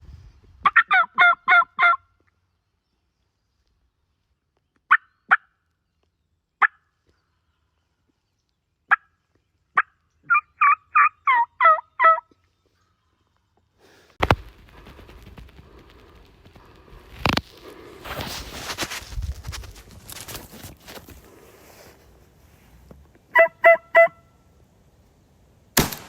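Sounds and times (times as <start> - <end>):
turkey clucks: 0.6 - 2.0, 9.8 - 12.3, 23.3 - 24.2
turkey gobbling: 0.6 - 2.0, 9.8 - 12.2, 23.3 - 24.2
shotgun shot: 25.8 - 26.0.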